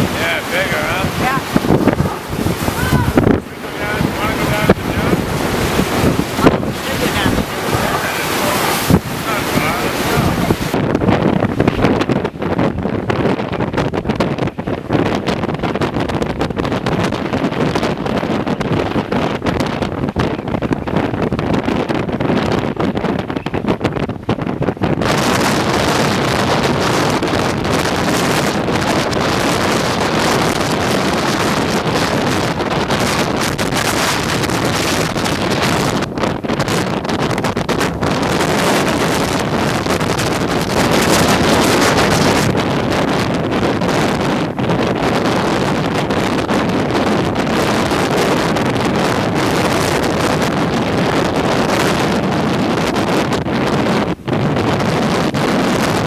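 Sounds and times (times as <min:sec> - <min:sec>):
storm wind roaring: 0:00.0 - 0:56.0.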